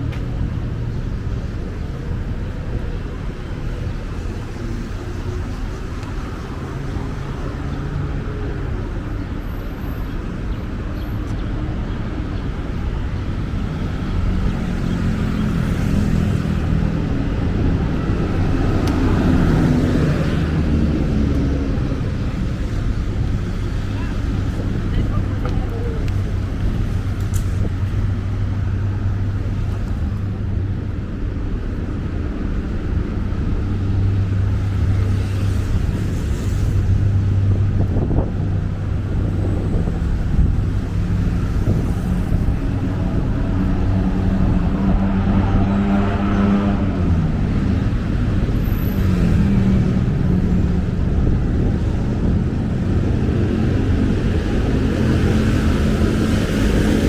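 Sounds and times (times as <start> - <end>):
vehicle engines passing: 0.0 - 57.0
engine revving pulling away: 34.3 - 57.0.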